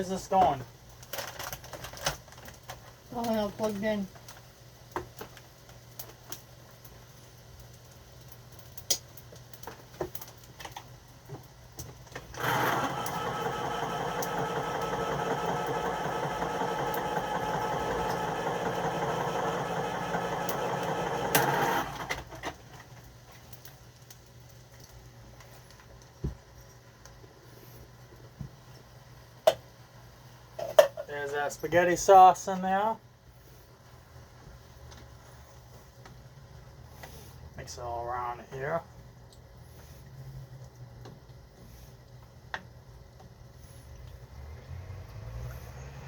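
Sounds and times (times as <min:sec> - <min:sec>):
small electric motor running: 0:12.4 - 0:22.3.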